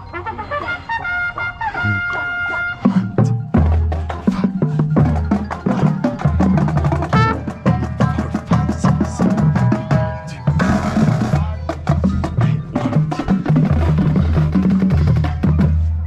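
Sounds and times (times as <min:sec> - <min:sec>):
low bass notes: 0:01.8 - 0:02.1
marching percussion strikes: 0:01.8 - 0:15.9.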